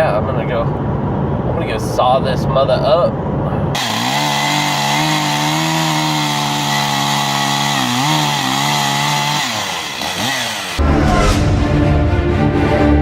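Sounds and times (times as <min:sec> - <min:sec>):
chainsaw running at high revs: 0:03.8 - 0:10.8.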